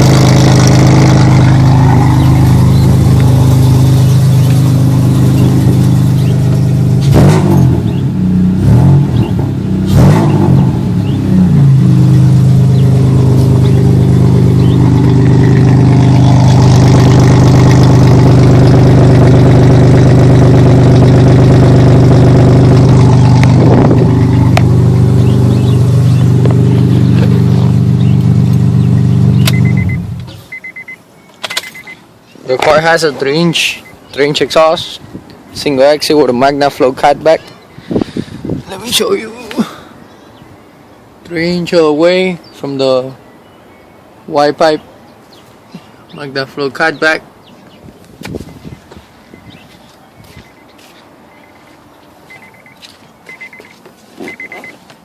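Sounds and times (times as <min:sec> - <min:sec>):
car engine idling and revving: 0:00.0 - 0:32.0, 0:48.1 - 0:54.8.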